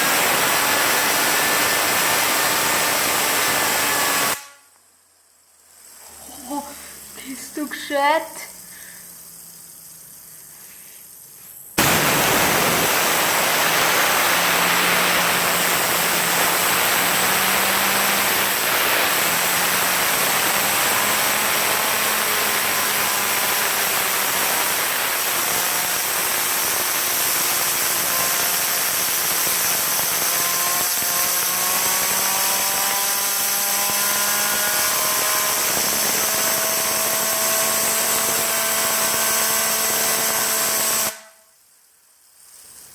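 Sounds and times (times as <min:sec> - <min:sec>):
air blow gun hissing: 0:00.0 - 0:41.6
spinner whine rising in pitch: 0:11.8 - 0:24.8, 0:28.8 - 0:40.4.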